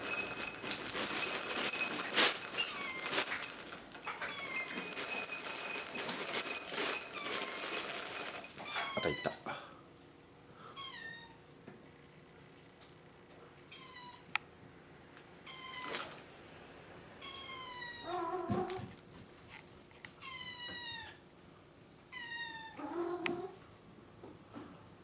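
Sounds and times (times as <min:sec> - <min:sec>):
cats meowing: 0:08.6 - 0:09.4, 0:17.2 - 0:18.9.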